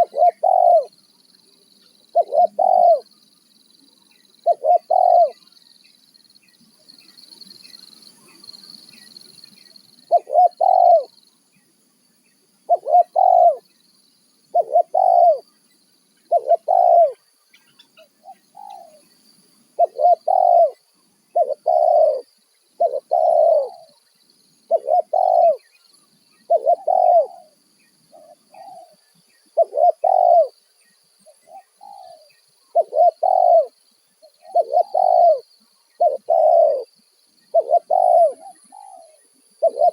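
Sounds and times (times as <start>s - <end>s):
dove cooing: 0.0s - 1.0s, 2.0s - 3.1s, 4.4s - 5.5s, 10.1s - 11.2s, 12.7s - 13.6s, 14.5s - 15.5s, 16.3s - 17.2s, 18.0s - 19.1s, 19.8s - 24.0s, 24.7s - 25.7s, 26.4s - 29.0s, 29.6s - 30.6s, 31.3s - 36.9s, 37.5s - 39.9s
faint steady high hiss: 0.0s - 39.9s.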